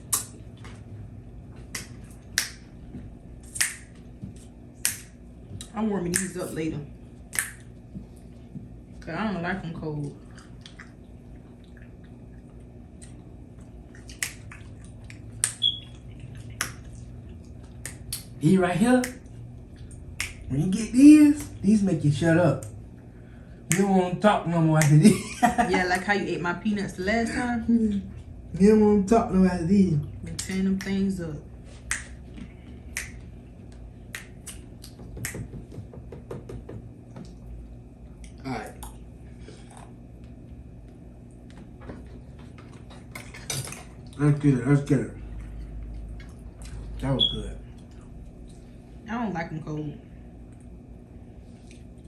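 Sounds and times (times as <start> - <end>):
wet clicks and squishes of chewing: 10.0 - 18.4, 19.0 - 21.6, 31.7 - 35.4, 37.1 - 44.2, 45.2 - 48.8, 50.5 - 50.8, 51.6 - 52.0.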